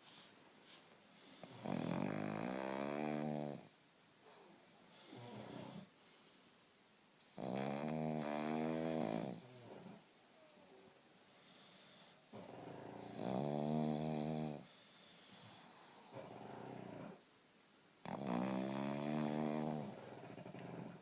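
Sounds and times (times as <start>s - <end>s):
soft dog breath: 0.0s - 1.7s, 4.2s - 7.4s, 14.6s - 17.2s
dog snoring loudly: 1.1s - 3.8s, 4.9s - 5.9s, 7.3s - 10.1s, 11.4s - 17.2s, 18.0s - 21.0s.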